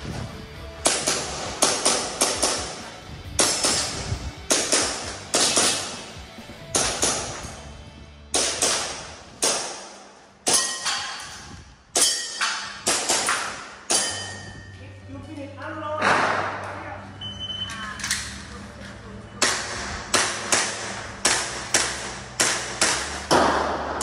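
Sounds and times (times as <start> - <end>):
airsoft pistol shots: 0.8 - 2.8, 3.4 - 6.0, 6.7 - 7.4, 8.3 - 11.3, 12.0 - 14.2, 16.0 - 16.6, 19.4 - 24.0.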